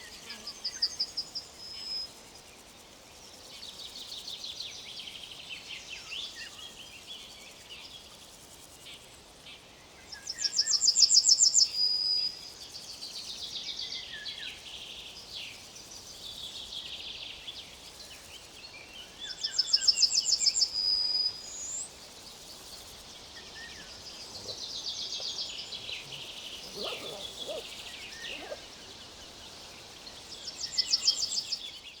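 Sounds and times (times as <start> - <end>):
birds chirping and twittering: 16.4 - 32.0
songbird trilling: 23.2 - 29.3.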